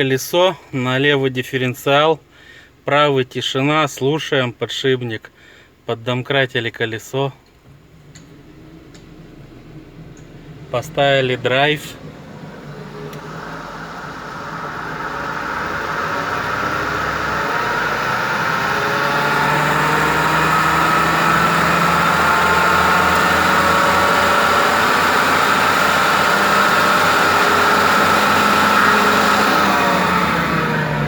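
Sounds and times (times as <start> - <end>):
car engine running: 7.6 - 31.0
wheel bearing humming: 7.6 - 31.0.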